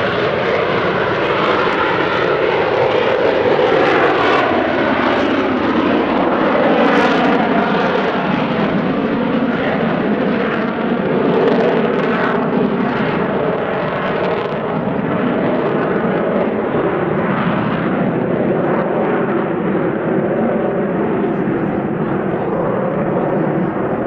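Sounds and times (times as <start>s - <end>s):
jet engine roar: 0.0s - 24.0s.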